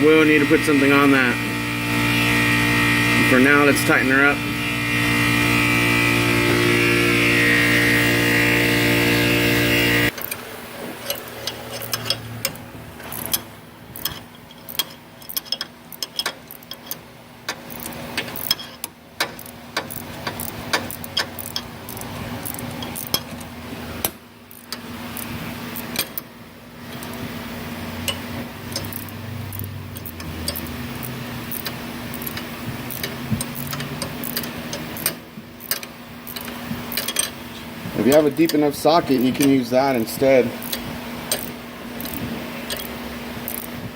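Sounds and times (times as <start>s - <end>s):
power tool motor running: 0.0s - 14.4s, 26.9s - 35.2s
metallic clicks of hand tools: 11.0s - 26.3s, 28.0s - 37.4s, 40.6s - 43.7s.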